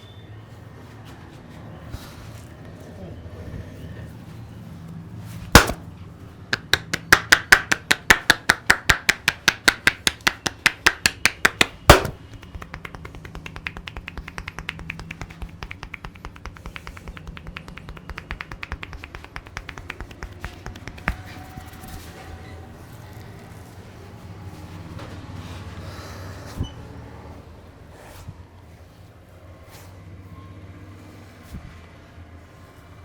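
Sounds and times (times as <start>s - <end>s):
percussive massage strikes: 5.5s - 21.8s.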